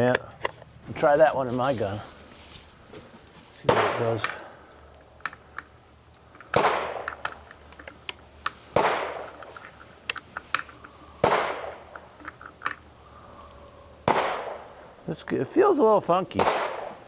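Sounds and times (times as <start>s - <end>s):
small metallic clicks: 4.2s - 8.6s, 9.3s - 11.0s
gunshots with long echo: 8.8s - 9.2s, 11.2s - 11.8s, 14.0s - 14.7s, 16.4s - 17.0s.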